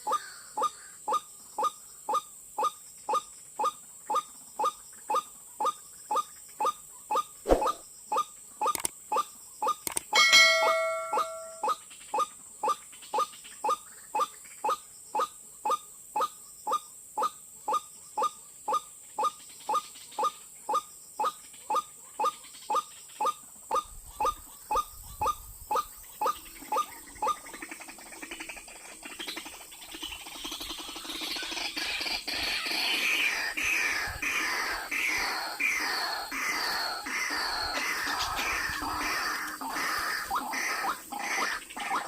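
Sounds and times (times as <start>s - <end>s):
jumbled bird calling: 0.0s - 42.0s
bird call repeated: 9.9s - 11.8s.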